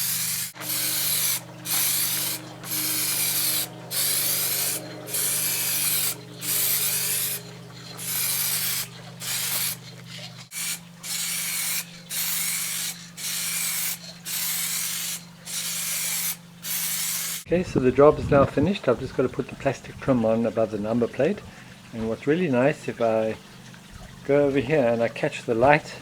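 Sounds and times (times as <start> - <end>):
aerosol spray can hissing: 0.0 - 17.5.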